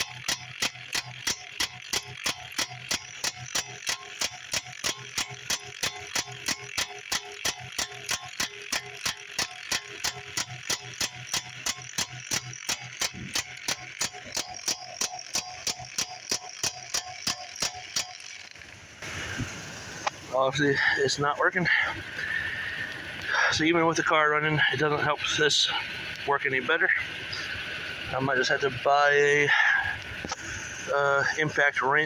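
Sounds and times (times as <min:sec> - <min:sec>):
impact wrench hammering: 0:00.0 - 0:18.5
impact wrench motor hum: 0:00.0 - 0:20.7.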